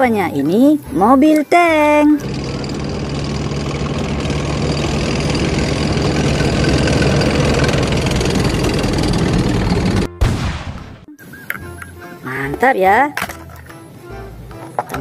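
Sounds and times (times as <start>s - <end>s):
heavy tank engine rumbling: 1.7s - 10.2s.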